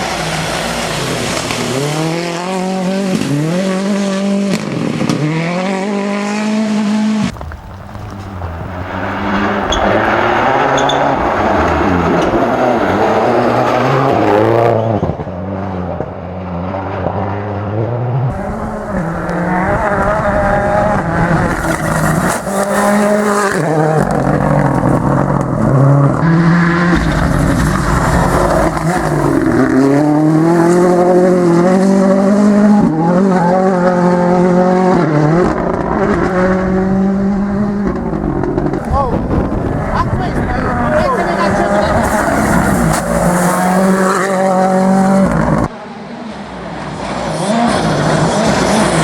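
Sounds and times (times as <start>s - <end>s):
rally car engines revving: 0.0s - 49.0s
tyre squeal: 7.3s - 12.2s.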